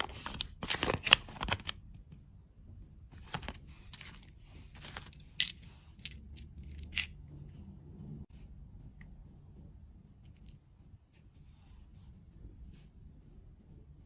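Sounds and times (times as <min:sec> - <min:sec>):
packaging crinkling and tearing: 0:00.0 - 0:01.8.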